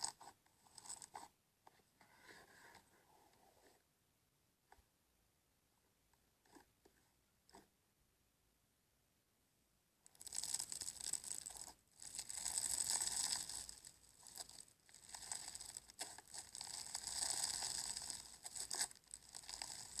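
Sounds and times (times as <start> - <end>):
slime crackling and popping: 10.1 - 20.0.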